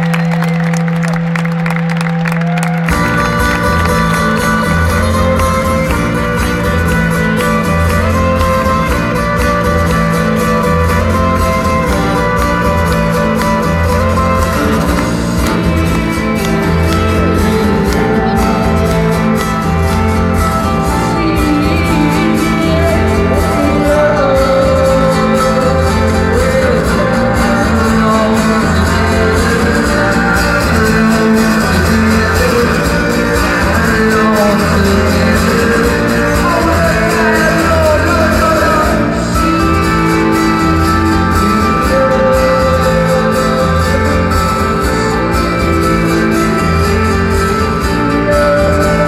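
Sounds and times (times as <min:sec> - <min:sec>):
guitar: 0:00.0 - 0:49.0
person singing: 0:02.8 - 0:49.0.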